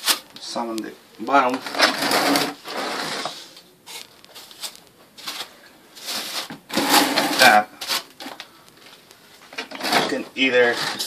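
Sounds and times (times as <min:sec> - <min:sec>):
trowel scraping mortar: 0:01.6 - 0:03.5.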